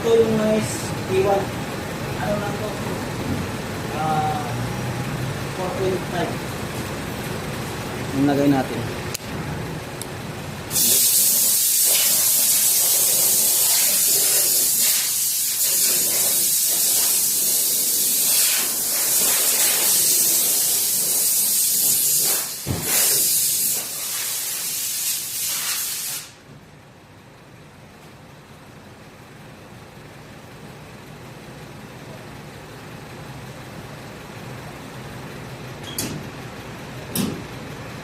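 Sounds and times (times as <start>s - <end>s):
pressurized air hissing: 10.7s - 26.4s.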